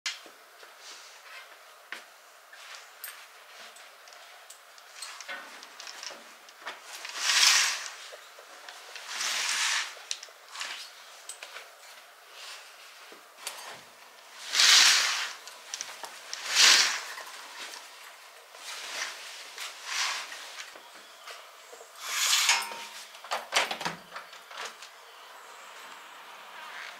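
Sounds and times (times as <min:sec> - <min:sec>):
fabric rustling and swishing: 0:06.2 - 0:20.7.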